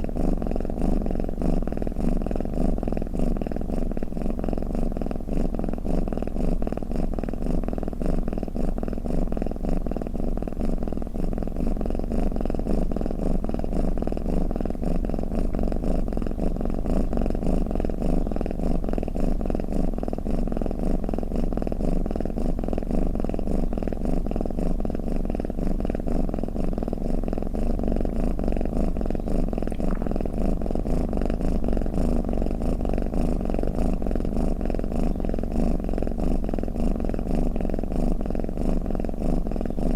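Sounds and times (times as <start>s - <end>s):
cat purring: 0.0s - 39.9s.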